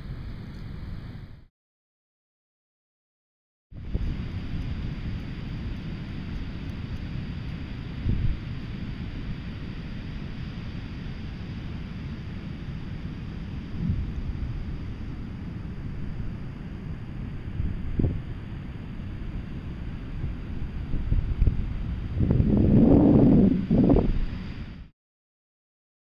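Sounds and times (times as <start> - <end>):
wind buffeting microphone: 3.8 - 10.4, 11.2 - 24.9.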